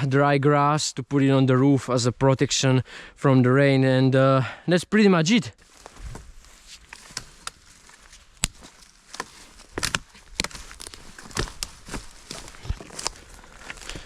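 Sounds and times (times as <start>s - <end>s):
footsteps on forest floor: 5.6s - 14.0s
twigs snapping: 5.6s - 14.0s.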